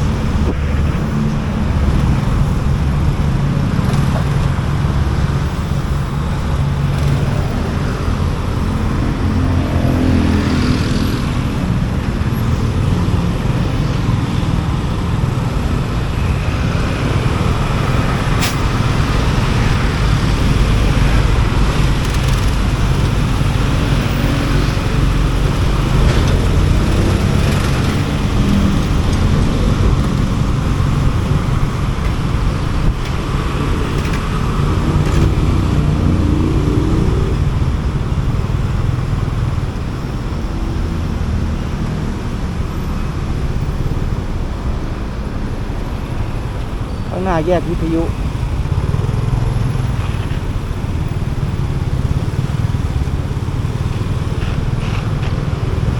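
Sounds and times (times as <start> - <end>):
road and traffic noise: 0.0 - 55.9.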